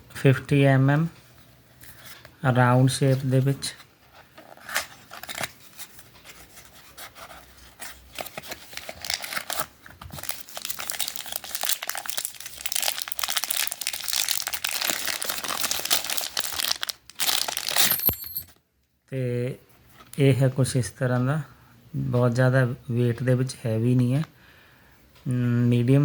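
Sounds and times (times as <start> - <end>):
packaging crinkling and tearing: 4.4 - 6.4, 7.8 - 18.1.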